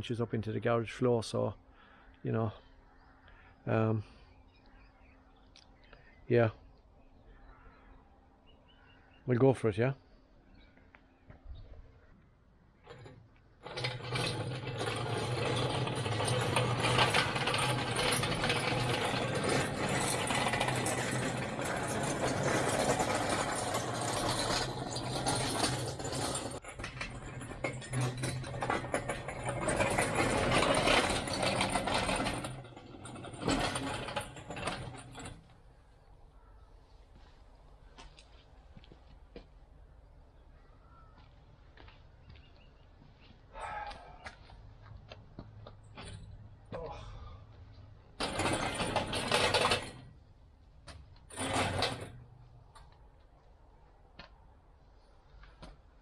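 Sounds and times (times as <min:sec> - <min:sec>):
metal lathe wheels rumbling: 0:12.9 - 0:35.5, 0:48.2 - 0:50.2, 0:51.3 - 0:52.4.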